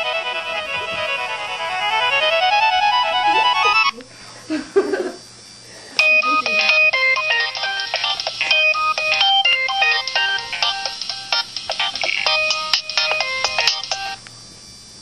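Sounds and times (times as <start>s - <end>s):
phone ringtone beeping melody: 6.0s - 14.2s.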